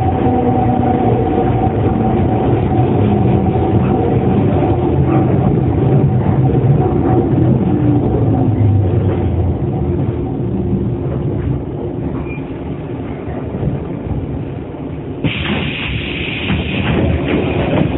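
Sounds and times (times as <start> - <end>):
electric train rumble and hum: 0.0 - 17.9
loud hiss: 15.2 - 17.9.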